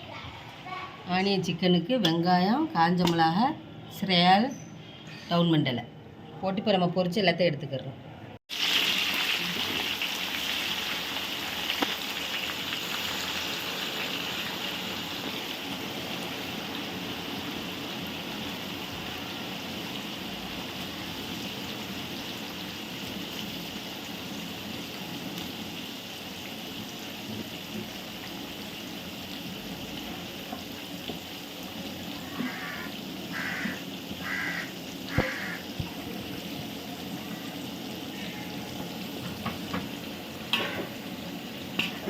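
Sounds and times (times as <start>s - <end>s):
onions sizzling in oil: 8.5s - 42.0s.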